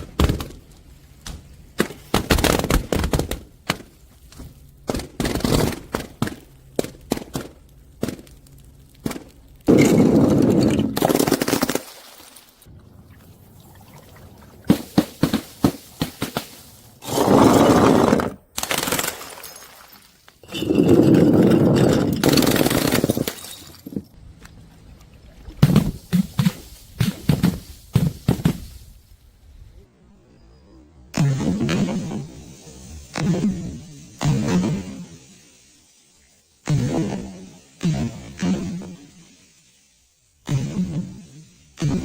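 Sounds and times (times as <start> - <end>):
glass bottles smashing: 18.7 - 24.2.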